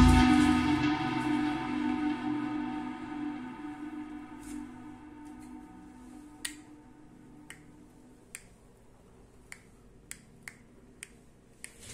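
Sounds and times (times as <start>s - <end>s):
background music: 0.0s - 7.8s.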